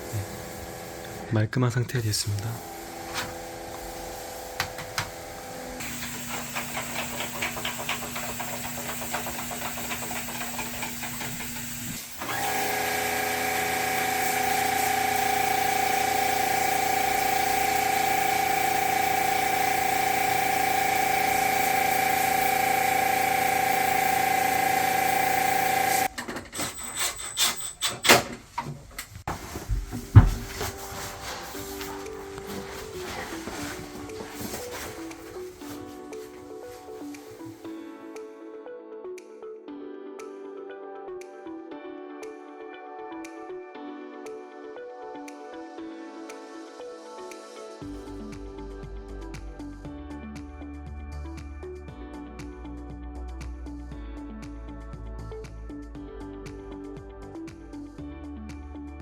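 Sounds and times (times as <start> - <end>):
machine hissing and whining: 0.0 - 1.4, 2.3 - 26.1.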